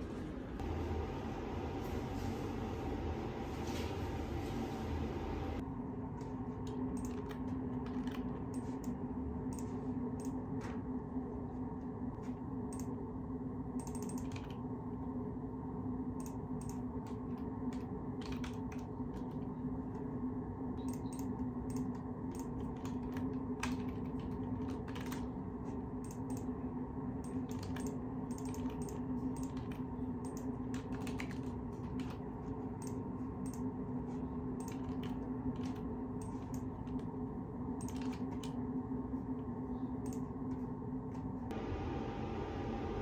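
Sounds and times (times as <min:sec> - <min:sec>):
low background hum: 0:00.0 - 0:43.0
keyboard typing clicks: 0:06.7 - 0:10.4, 0:13.8 - 0:14.6, 0:16.2 - 0:19.4, 0:20.8 - 0:25.3, 0:27.2 - 0:33.7, 0:34.6 - 0:37.1, 0:37.8 - 0:38.6.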